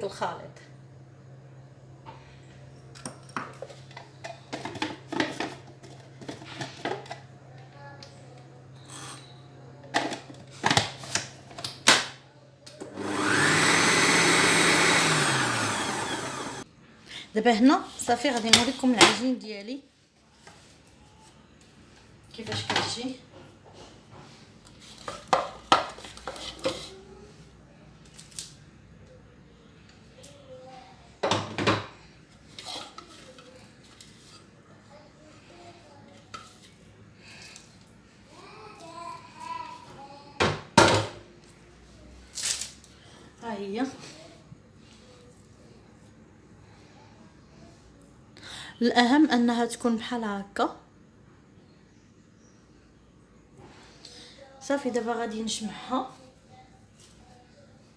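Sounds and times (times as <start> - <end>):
electric food mixer motor: 12.8 - 16.6.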